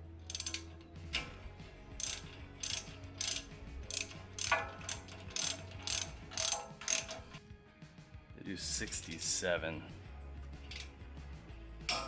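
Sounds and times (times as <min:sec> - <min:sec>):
hand ratchet clicking: 0:00.3 - 0:00.8, 0:02.0 - 0:07.4, 0:10.7 - 0:10.9.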